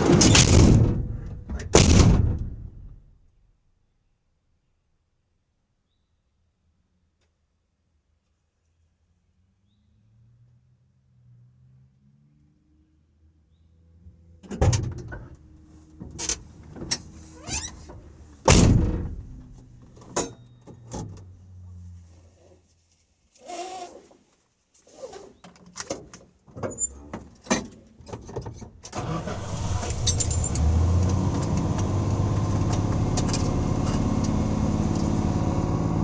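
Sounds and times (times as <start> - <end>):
van door clunks and knocks: 0.0 - 3.1, 18.5 - 19.8.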